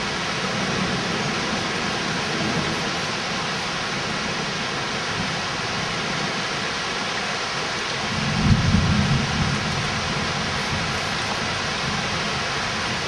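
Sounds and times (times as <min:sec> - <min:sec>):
heavy rain falling: 0:00.0 - 0:13.0
low rumble of thunder: 0:08.0 - 0:13.0.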